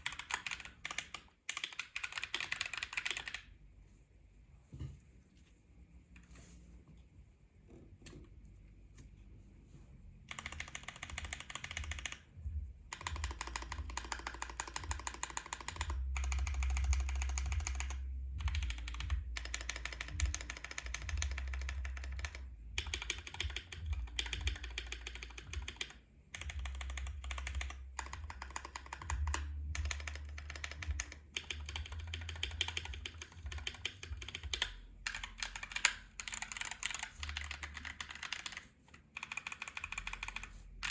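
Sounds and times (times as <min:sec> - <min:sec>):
fast typing on mechanical keyboard: 0:00.0 - 0:03.5, 0:10.3 - 0:12.3, 0:12.9 - 0:40.9.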